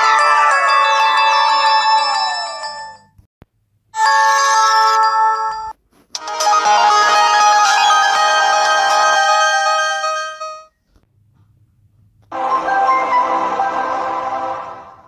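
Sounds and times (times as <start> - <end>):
synthesized ringtone tune: 0.0 - 3.2, 6.3 - 10.7
electronic melody: 6.2 - 10.7, 12.3 - 14.8.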